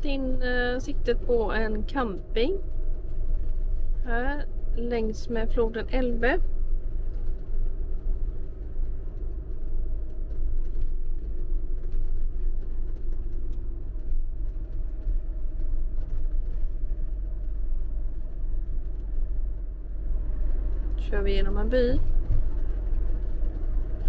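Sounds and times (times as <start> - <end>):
engine and tyre rumble: 0.0 - 24.0
faint hum: 0.0 - 24.0.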